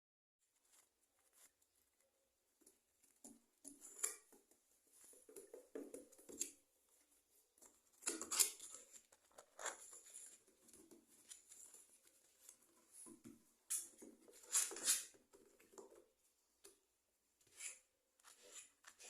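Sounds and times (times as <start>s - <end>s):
small pets scratching and rustling: 0.5s - 2.0s, 2.7s - 16.2s.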